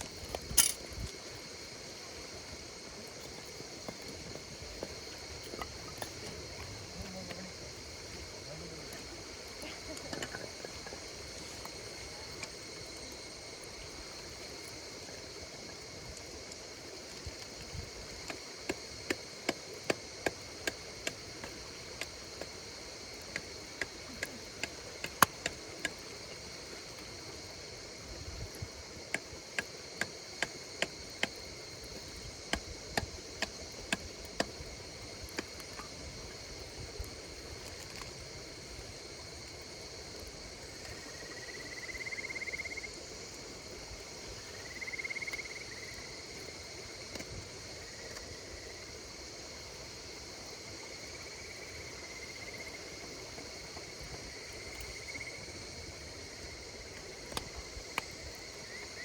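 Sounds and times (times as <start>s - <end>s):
campfire crackling and popping: 0.0s - 41.1s, 56.8s - 58.4s
insects calling: 0.0s - 59.0s.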